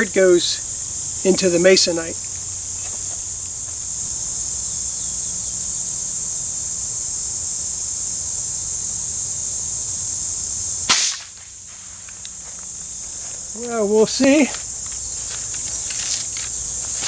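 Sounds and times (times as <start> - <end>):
high-pitched insect chirring: 0.0 - 17.0
rifle shot: 10.9 - 11.4.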